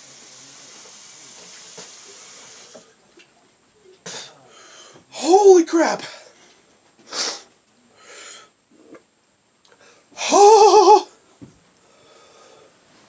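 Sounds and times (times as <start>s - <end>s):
man groaning: 10.2s - 11.1s
man breathing hard: 11.8s - 12.8s.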